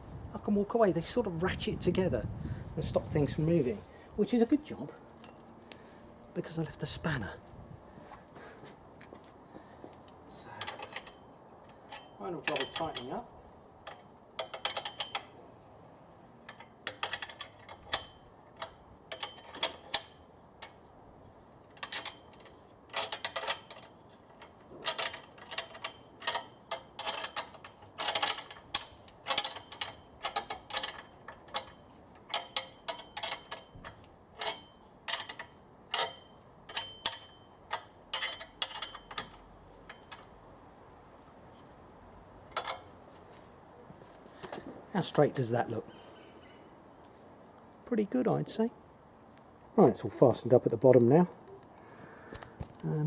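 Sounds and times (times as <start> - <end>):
sharp metallic clicks of spanner: 13.8 - 15.3, 16.5 - 20.8, 21.7 - 40.4.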